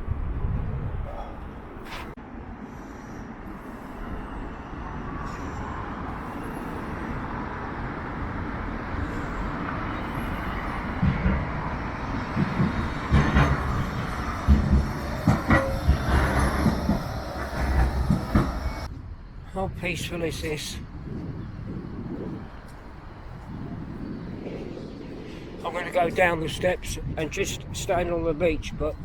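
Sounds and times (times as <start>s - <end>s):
passing vehicle rumble: 0.0s - 19.4s
low thumps: 11.0s - 19.0s.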